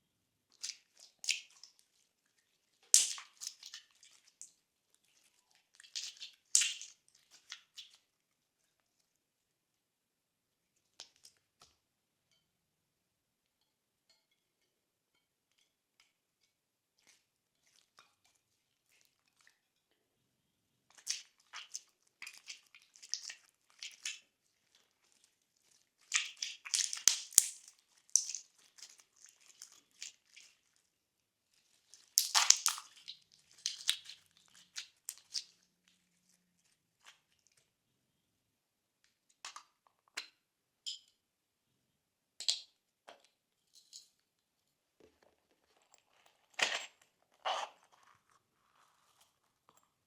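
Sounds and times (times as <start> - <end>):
slime crackling and popping: 26.0 - 29.7, 32.0 - 35.4.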